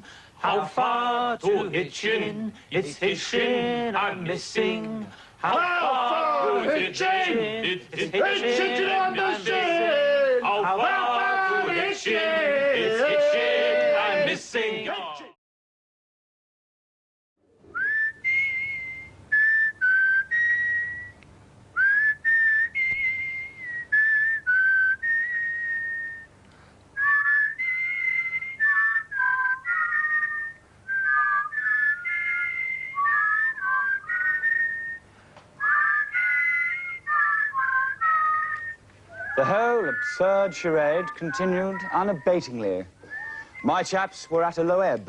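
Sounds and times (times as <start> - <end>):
person whistling a tune: 17.7 - 21.2, 21.8 - 26.3, 27.0 - 41.9, 43.0 - 43.7.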